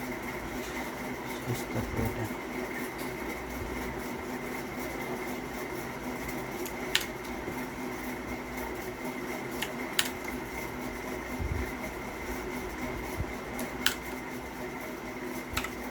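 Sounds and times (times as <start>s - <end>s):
fan-like room hum: 0.0s - 15.9s
sharp clicks: 6.6s - 7.1s, 13.8s - 14.2s, 15.5s - 15.8s.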